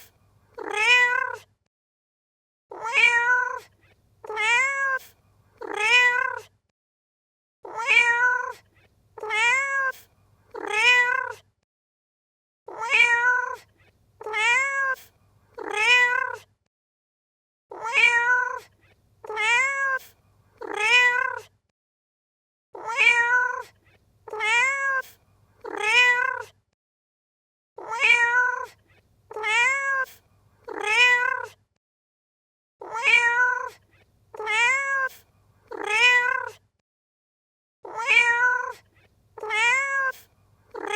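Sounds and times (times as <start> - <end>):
cat meowing: 0.6 - 1.5, 2.7 - 6.5, 7.6 - 8.6, 9.2 - 11.4, 12.7 - 16.5, 17.7 - 21.5, 22.8 - 26.5, 27.8 - 31.6, 32.8 - 36.6, 37.9 - 40.9.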